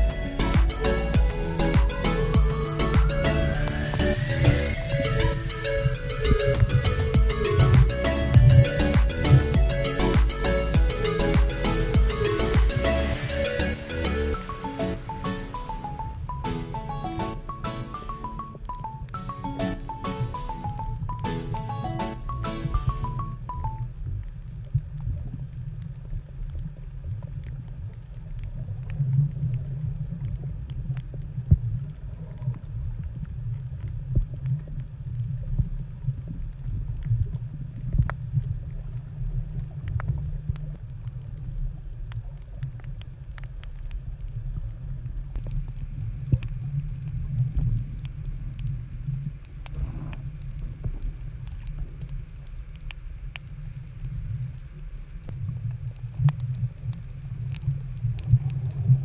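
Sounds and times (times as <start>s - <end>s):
muffled underwater rumble: 0.0s - 13.3s, 19.9s - 59.0s
sharp underwater clicks and crackles: 23.0s - 59.0s.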